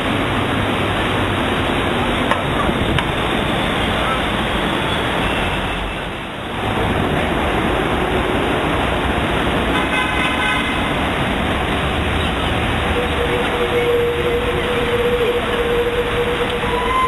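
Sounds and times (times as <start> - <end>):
road traffic noise: 0.0 - 17.0
car horn toot: 9.8 - 10.8, 13.0 - 17.0.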